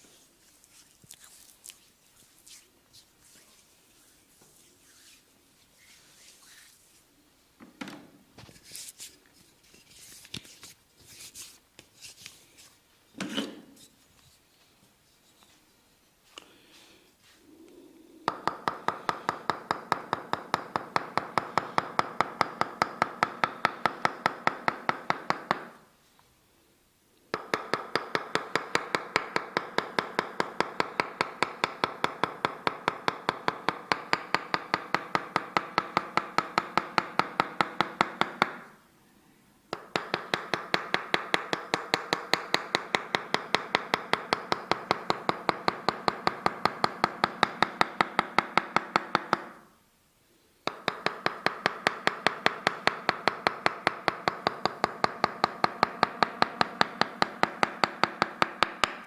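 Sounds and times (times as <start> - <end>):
wooden mallet tapping wooden wedge: 18.3 - 25.8, 27.3 - 38.7, 39.7 - 49.6, 50.6 - 59.0.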